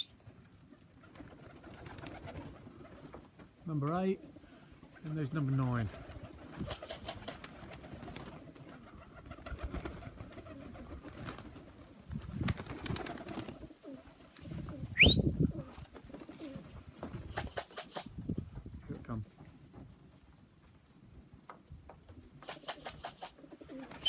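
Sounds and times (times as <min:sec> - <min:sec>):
pigeons cooing: 0:06.0 - 0:11.6, 0:12.9 - 0:18.0, 0:22.4 - 0:24.0
short rising whistle: 0:15.0 - 0:15.2.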